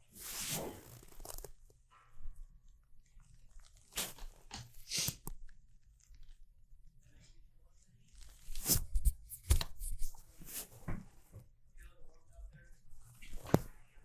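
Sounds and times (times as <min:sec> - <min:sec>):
rustling and crunching handling noise: 0:00.0 - 0:01.8.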